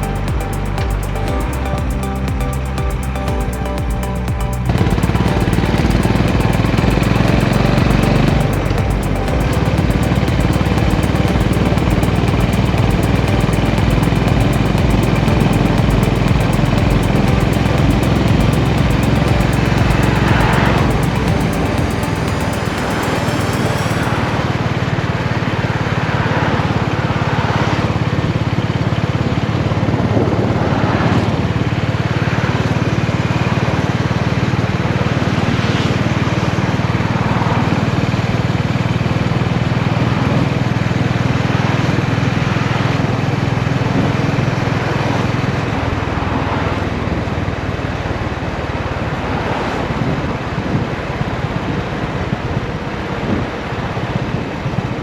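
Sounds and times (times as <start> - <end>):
motorcycle engine running: 0.0 - 25.2
wind and road noise: 4.6 - 55.0.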